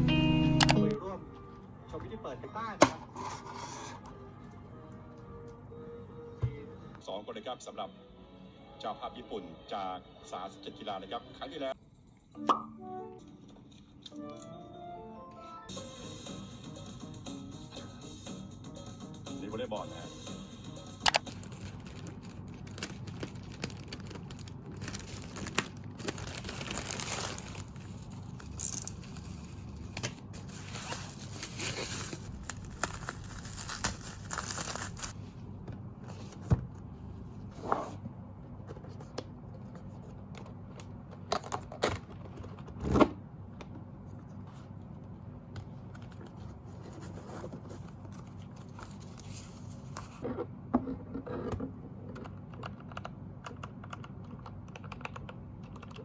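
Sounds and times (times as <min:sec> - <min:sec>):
packaging tearing and crinkling: 0:21.2 - 0:35.2.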